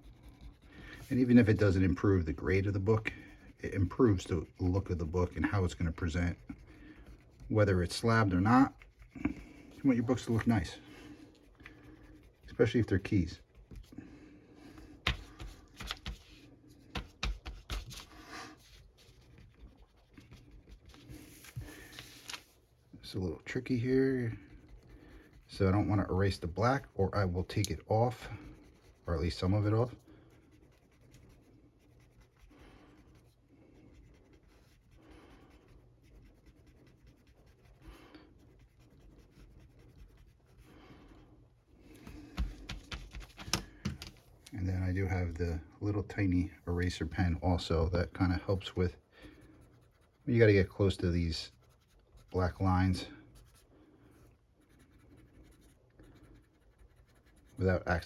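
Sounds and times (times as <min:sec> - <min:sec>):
eraser scrubbing paper: 0:00.0 - 0:14.0, 0:14.6 - 0:41.1, 0:41.9 - 0:45.4.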